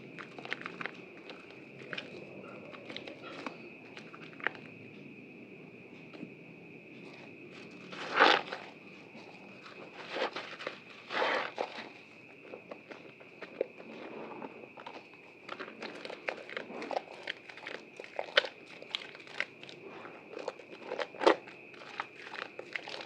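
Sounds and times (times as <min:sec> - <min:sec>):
wet soap crackling and clicking: 0:00.0 - 0:05.0, 0:14.7 - 0:23.0.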